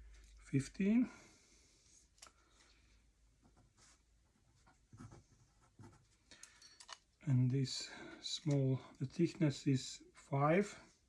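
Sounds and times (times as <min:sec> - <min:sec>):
pencil scratching on paper: 0:03.4 - 0:06.1.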